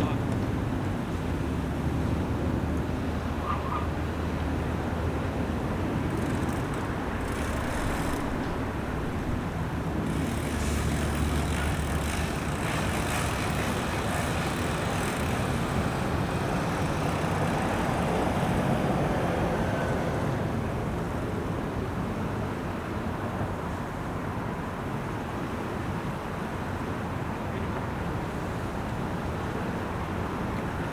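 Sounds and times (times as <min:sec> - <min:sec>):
engines rumbling: 0:00.0 - 0:21.3
outdoor background noise: 0:00.0 - 0:30.9.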